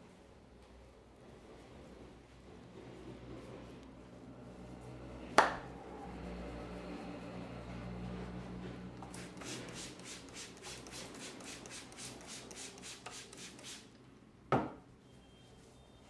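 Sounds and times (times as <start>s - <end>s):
hands rubbing scalp and hair: 9.0s - 13.8s.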